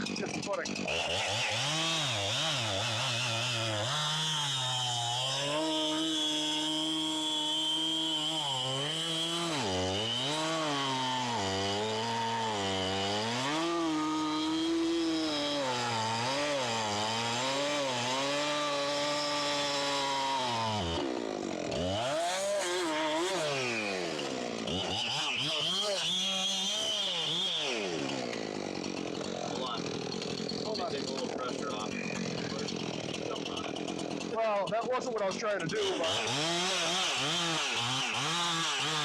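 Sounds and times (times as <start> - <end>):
chainsaw cutting wood: 0.0 - 39.0.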